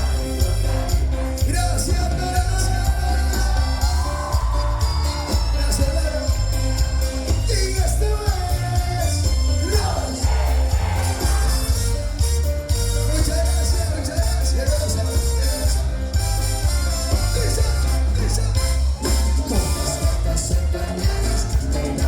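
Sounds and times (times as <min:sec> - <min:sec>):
lead singer singing: 0:00.0 - 0:11.9, 0:17.3 - 0:22.0
heavy bass beat: 0:00.0 - 0:22.0
live band playing: 0:00.0 - 0:22.0.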